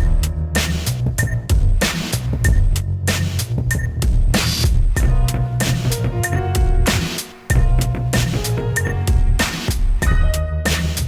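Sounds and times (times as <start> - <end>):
deep bass line: 0.0 - 11.0
drum hits: 0.0 - 11.0.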